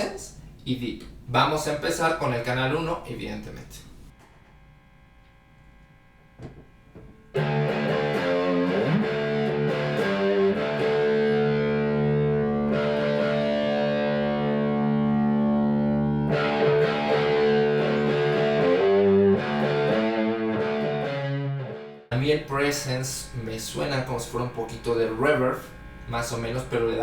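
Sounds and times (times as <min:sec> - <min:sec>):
distorted electric guitar: 0:07.3 - 0:27.0.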